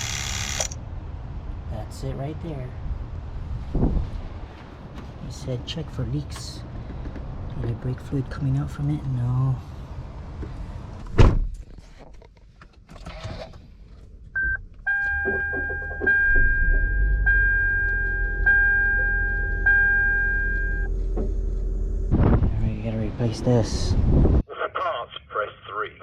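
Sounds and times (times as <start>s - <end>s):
thump: 11.1s - 11.5s, 22.1s - 22.5s
short electronic beep: 14.4s - 20.9s
electronic beeping tone: 14.4s - 21.0s
low hum: 14.4s - 24.4s.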